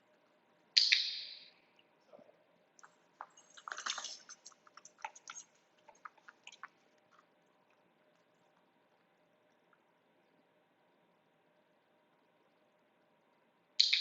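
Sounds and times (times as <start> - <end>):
dog chewing treat: 2.8 - 8.4.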